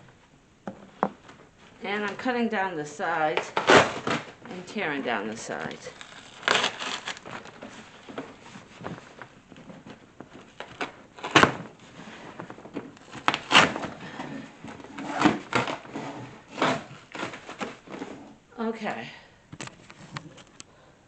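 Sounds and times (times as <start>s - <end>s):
loud cardboard rips and thumps: 3.4s - 4.4s, 5.6s - 18.3s
cardboard rustling: 3.4s - 18.4s.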